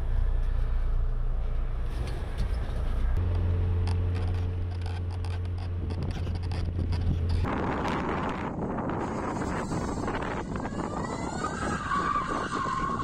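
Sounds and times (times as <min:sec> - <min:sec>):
car engine droning: 0:00.0 - 0:13.0
clicks and rattles: 0:02.0 - 0:07.5
wind noise on microphone: 0:05.2 - 0:13.0.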